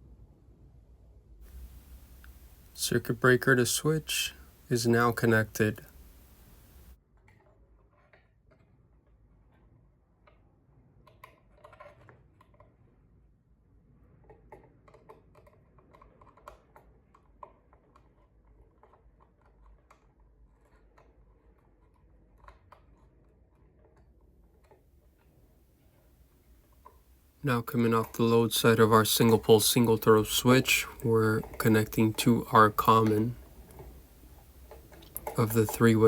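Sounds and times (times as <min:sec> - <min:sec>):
faint clicks of tools on wires: 0:01.5 - 0:03.2, 0:27.8 - 0:36.0.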